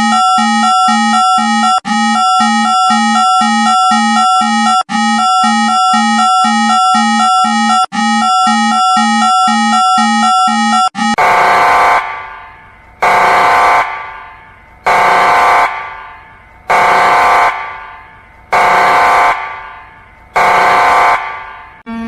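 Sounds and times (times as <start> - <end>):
alarm horn blasts: 0.0 - 22.0.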